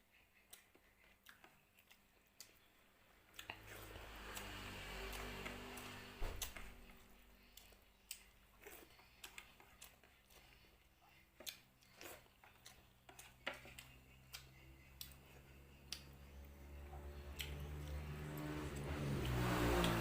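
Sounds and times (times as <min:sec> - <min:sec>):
soft chewing clicks and smacks: 0:00.0 - 0:20.0.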